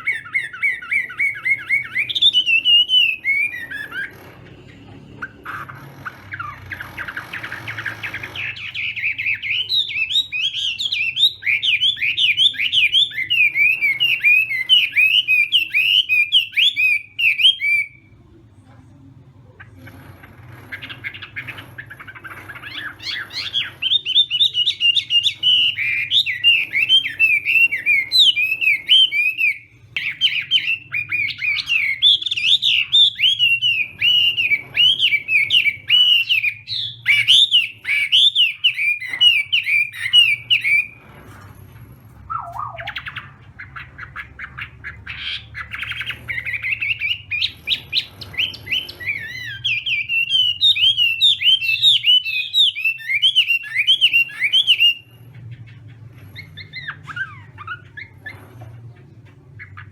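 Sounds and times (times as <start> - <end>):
faint low hum: 0.0 - 59.9
bird singing whistled notes: 42.3 - 43.2, 45.7 - 55.1.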